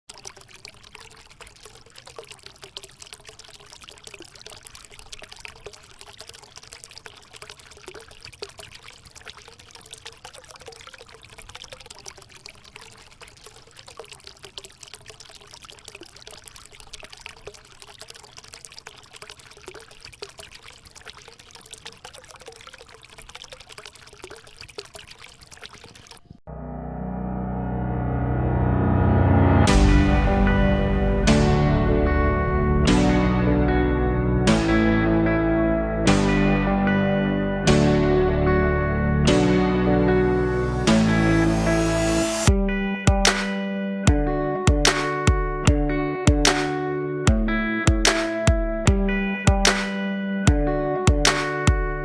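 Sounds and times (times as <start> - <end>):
fountain water splashing: 0.1 - 26.3, 29.7 - 32.1, 40.3 - 42.6, 43.2 - 43.8, 48.0 - 48.4, 49.3 - 52.0.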